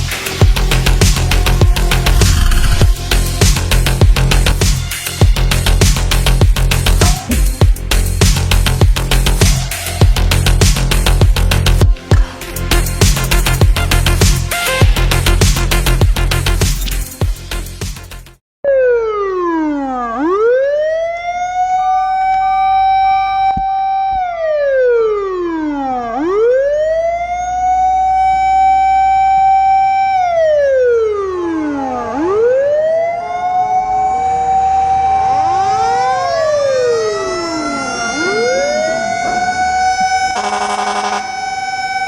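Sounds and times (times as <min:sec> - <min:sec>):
fire truck siren wailing: 0:00.0 - 0:04.6, 0:18.6 - 0:42.0
second siren: 0:01.4 - 0:03.0, 0:18.6 - 0:42.0.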